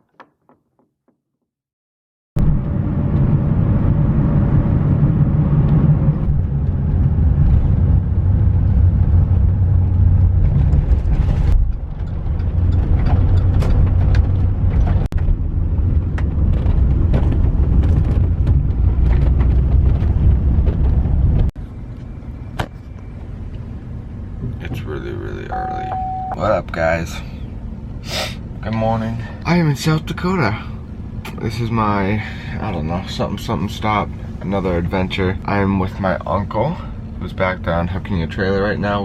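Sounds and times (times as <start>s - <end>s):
vehicle engine rumbling: 2.4s - 39.0s
sharp clicks and rattles: 10.4s - 15.4s.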